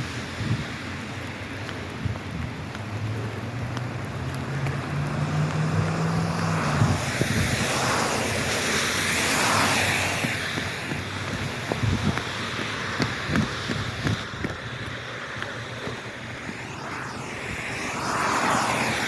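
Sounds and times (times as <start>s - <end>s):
tyres hissing on wet pavement: 0.0s - 19.0s
car engine rising in pitch: 3.4s - 12.2s, 15.1s - 19.0s.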